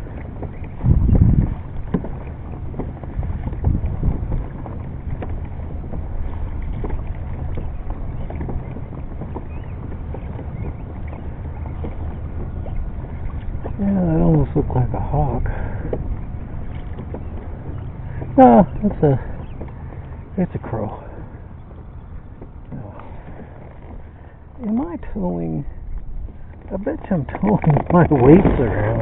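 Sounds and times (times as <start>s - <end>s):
water lapping against hull: 0.0s - 29.0s
wind buffeting microphone: 0.0s - 29.0s
small knocks: 1.4s - 6.0s.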